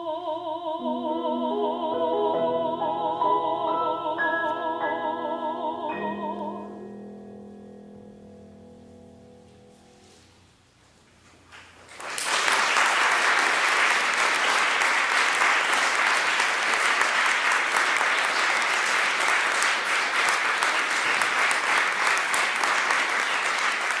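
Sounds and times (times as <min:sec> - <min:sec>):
audience applauding: 0:11.8 - 0:24.0.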